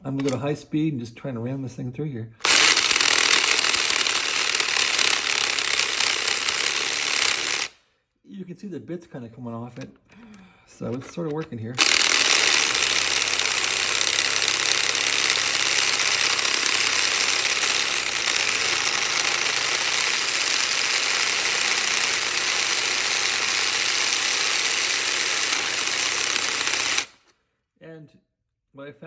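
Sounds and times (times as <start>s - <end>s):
drill bit grinding into metal: 0.0s - 0.5s, 2.4s - 7.8s, 9.8s - 27.3s.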